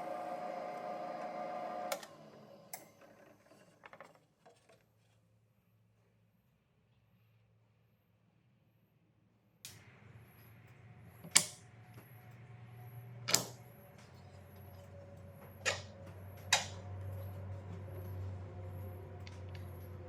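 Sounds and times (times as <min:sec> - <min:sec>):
low steady hum: 0:09.7 - 0:20.0.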